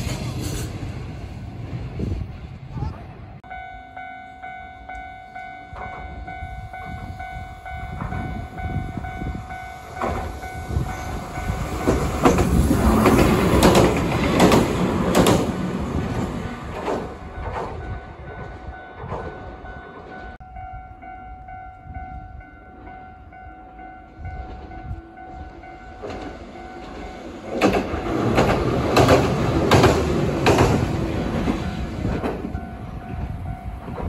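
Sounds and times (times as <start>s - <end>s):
train passing: 0.0s - 34.0s
wheels clacking over rail joints: 9.9s - 20.4s, 25.9s - 34.0s.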